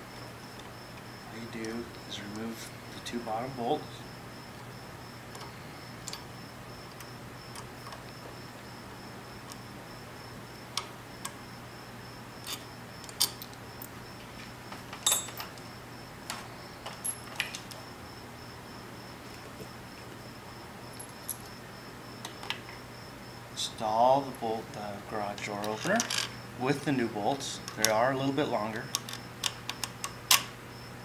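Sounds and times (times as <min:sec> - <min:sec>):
wrench and bolts clinking: 0:12.4 - 0:13.5, 0:15.0 - 0:15.6.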